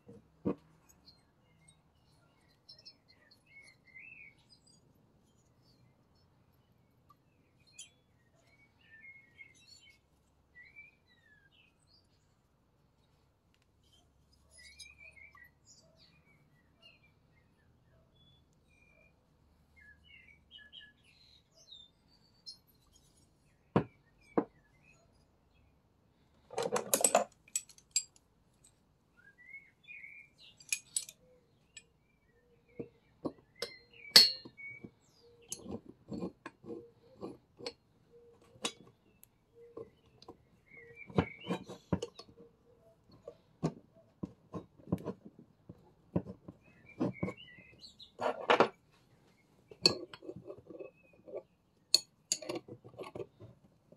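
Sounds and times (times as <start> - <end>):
birds chirping faintly: 0.0 - 53.9
metal tools clicking and clinking: 26.5 - 28.8, 30.5 - 31.9, 33.6 - 34.6, 49.7 - 53.4.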